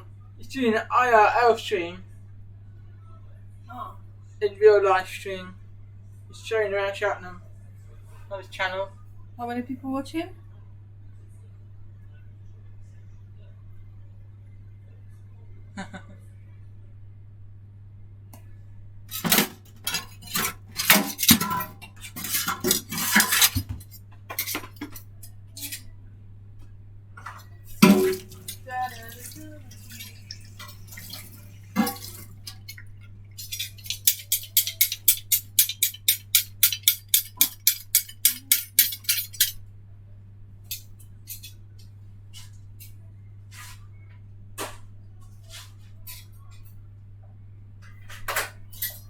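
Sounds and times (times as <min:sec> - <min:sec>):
dishes and cutlery clattering: 0:19.1 - 0:25.9, 0:27.2 - 0:39.6, 0:47.8 - 0:49.0.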